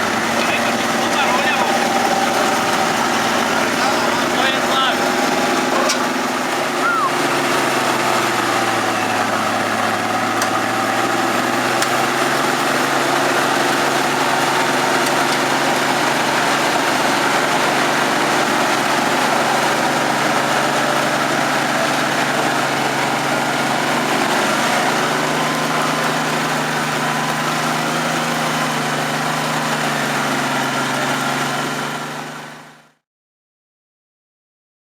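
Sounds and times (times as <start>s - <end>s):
background voices: 0.0s - 10.9s
diesel engine idling: 0.0s - 33.0s.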